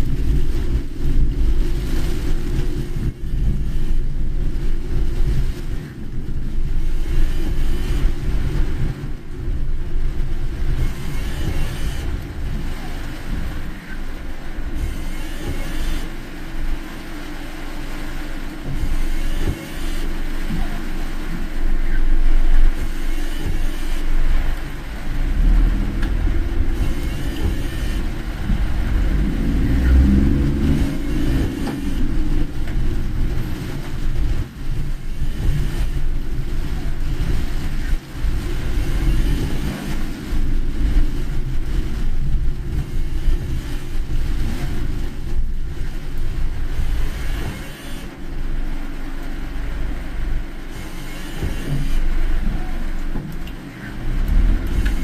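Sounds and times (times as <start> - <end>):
car engine rumble: 0.0 - 55.0
tyres on wet road: 0.0 - 55.0.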